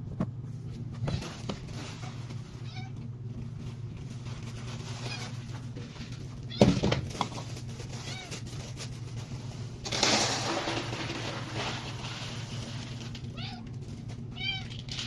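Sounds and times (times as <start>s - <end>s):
steady low hum: 0.0s - 15.0s
cat meowing softly: 2.6s - 3.0s, 13.3s - 13.7s.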